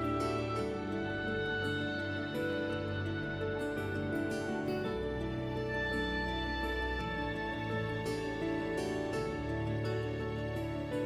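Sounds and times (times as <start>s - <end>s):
soft slow background music: 0.0s - 11.0s.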